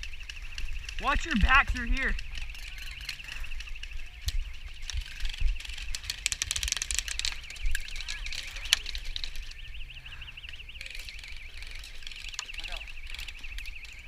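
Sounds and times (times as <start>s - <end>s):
sharp clicks: 0.0s - 9.7s.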